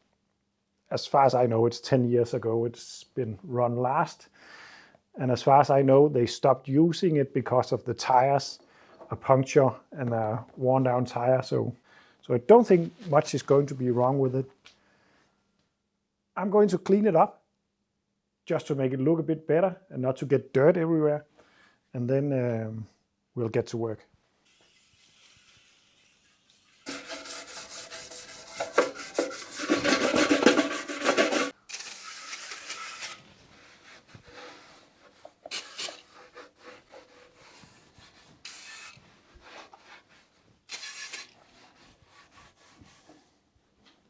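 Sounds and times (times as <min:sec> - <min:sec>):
scrubbing and rubbing strokes: 0:24.4 - 0:43.4.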